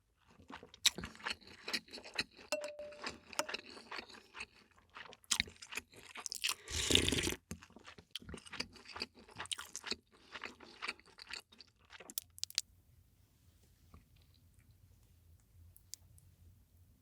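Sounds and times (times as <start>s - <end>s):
crunching and chewing food: 0.0s - 12.7s.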